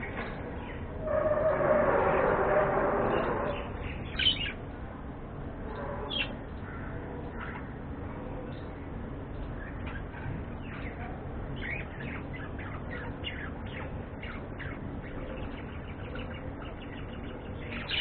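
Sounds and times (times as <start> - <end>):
steady low hum: 0.0 - 18.0
budgerigars chirping and chattering: 3.2 - 4.6, 9.5 - 18.0.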